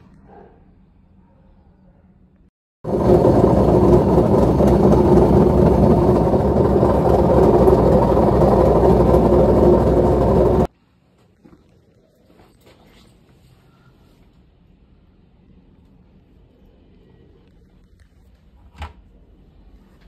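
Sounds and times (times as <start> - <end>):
washer drum spinning rumble: 2.8 - 10.7.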